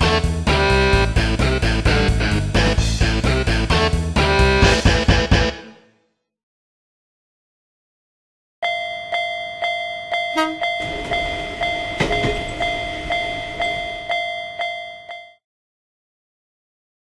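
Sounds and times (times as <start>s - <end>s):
railroad crossing bell ringing: 8.6s - 15.4s
train horn toot: 10.3s - 13.1s
train passing rumble: 10.3s - 14.9s.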